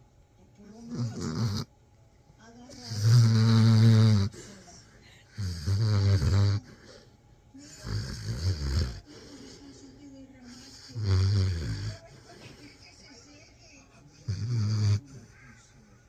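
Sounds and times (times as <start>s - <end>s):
dog snoring: 0.7s - 1.7s, 2.7s - 4.6s, 5.3s - 12.8s, 14.2s - 15.6s.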